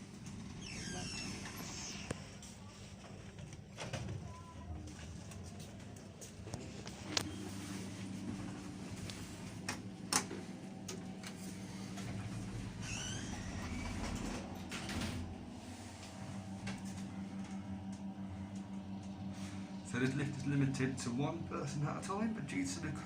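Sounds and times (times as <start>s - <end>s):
lift drive electrical hum: 0.0s - 23.0s
lift doors sliding: 7.1s - 17.0s.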